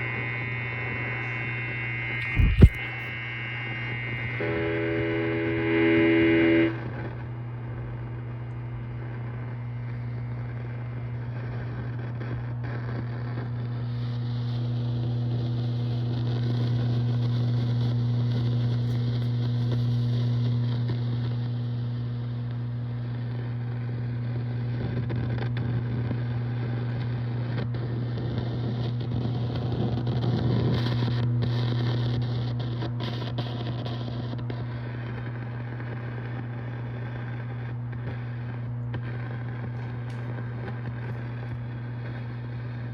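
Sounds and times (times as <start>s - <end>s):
amplifier hum: 0.0s - 42.9s
sharp crackles: 2.1s - 3.1s, 6.8s - 42.9s.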